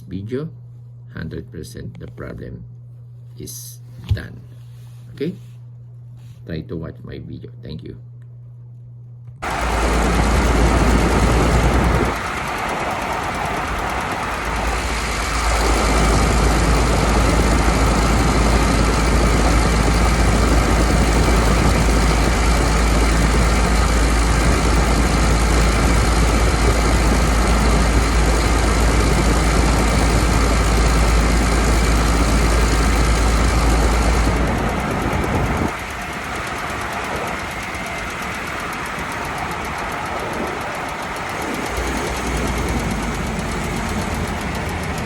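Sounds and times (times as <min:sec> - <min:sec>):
grinding under vehicle: 0:09.4 - 0:45.0
vehicle exhaust rumble: 0:09.4 - 0:45.0.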